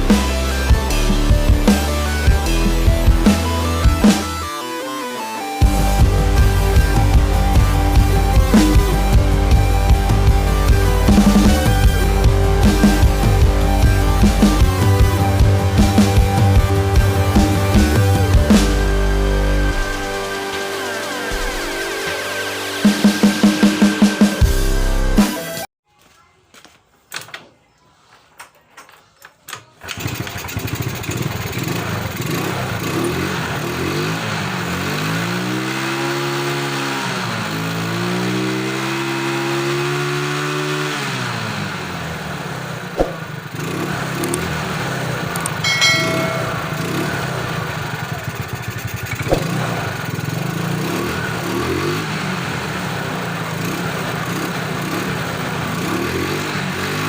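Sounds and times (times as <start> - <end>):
scooter engine revving: 5.6 - 24.6, 29.8 - 57.0
scooter engine starting and idling: 29.7 - 57.0.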